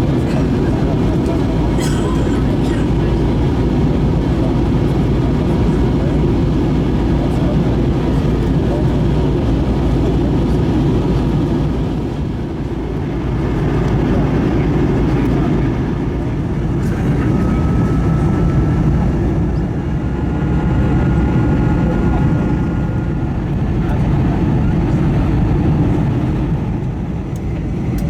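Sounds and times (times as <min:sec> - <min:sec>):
airliner engine roar in cabin: 0:00.0 - 0:28.0.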